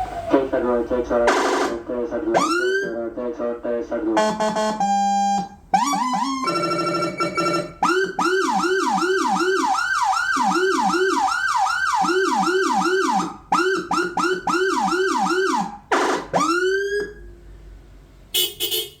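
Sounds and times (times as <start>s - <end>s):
electronic siren yelping: 0.0s - 3.1s, 4.2s - 17.3s.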